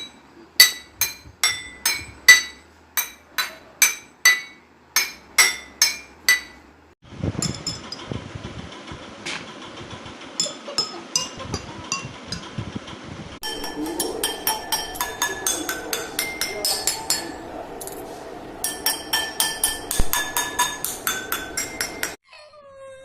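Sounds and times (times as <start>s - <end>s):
water glasses ringing notes: 13.4s - 22.2s.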